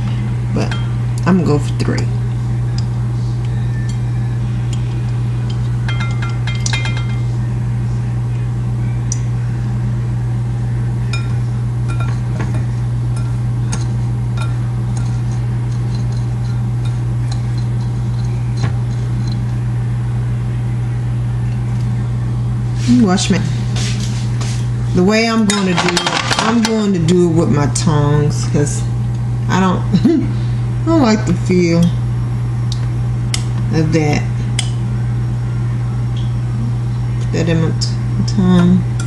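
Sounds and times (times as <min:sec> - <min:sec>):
steady low hum: 0:00.0 - 0:39.0
bowl and utensils clinking: 0:05.5 - 0:07.3, 0:11.1 - 0:19.4, 0:25.5 - 0:26.9.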